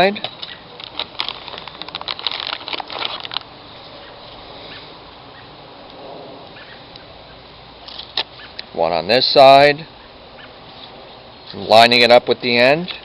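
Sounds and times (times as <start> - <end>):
faint steady hiss: 0.0 - 13.0
crackling rustle of peeled backing: 0.5 - 4.9.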